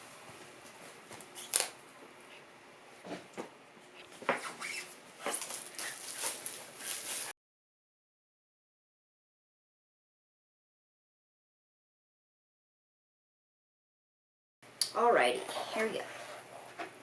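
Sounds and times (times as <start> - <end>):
packaging crinkling and scratching: 1.2 - 1.8, 4.5 - 7.3.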